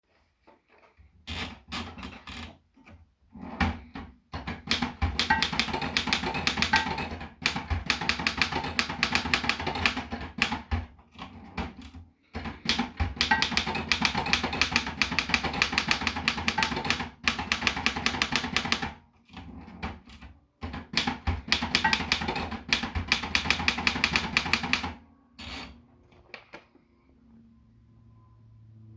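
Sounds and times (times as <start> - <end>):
typewriter key strikes: 4.6 - 10.8.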